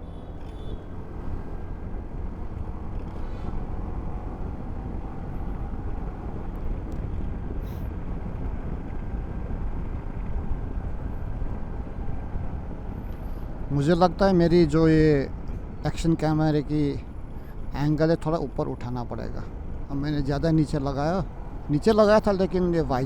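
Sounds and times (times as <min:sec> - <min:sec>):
motorcycle engine rumble: 0:00.0 - 0:23.0
wind noise on microphone: 0:04.6 - 0:13.7.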